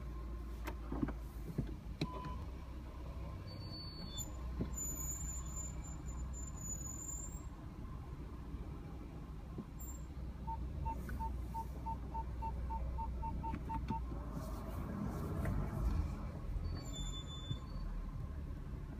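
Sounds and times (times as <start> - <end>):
low car rumble: 0.0 - 18.9
high-pitched brake squeal: 3.4 - 7.5, 16.6 - 18.0.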